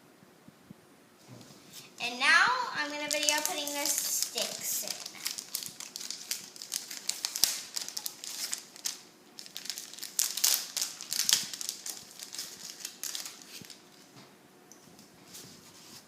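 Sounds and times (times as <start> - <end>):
plastic and paper crinkling: 2.7 - 14.2.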